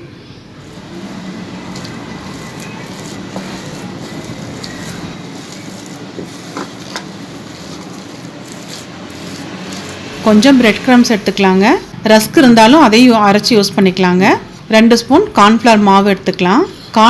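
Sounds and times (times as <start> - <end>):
spoon scraping a bowl: 0.6 - 11.0.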